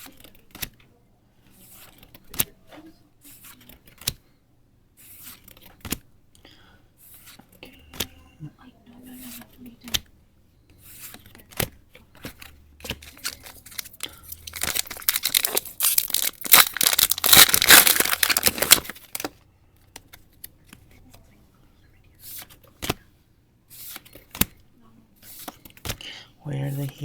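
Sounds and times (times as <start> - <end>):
wrapper being torn open: 13.1 - 19.3.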